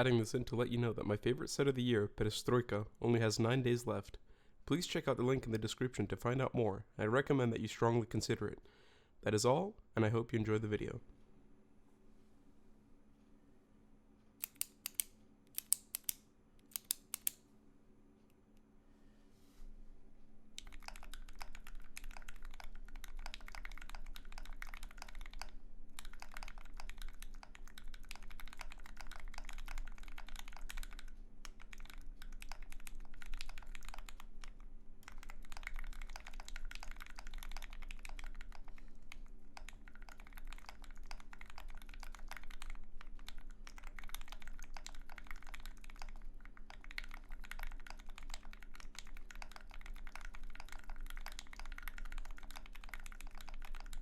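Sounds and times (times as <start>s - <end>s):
typing on mechanical keyboard: 20.6s - 54.0s.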